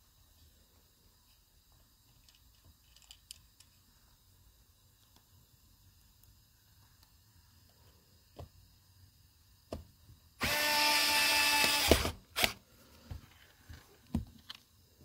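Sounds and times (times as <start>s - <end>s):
small clicks and knocks from handling: 2.1s - 3.8s
power screwdriver running: 10.4s - 12.6s.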